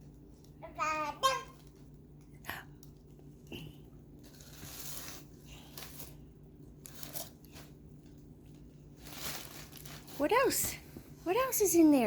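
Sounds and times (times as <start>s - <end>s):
packaging rustling and crinkling: 4.1s - 11.1s.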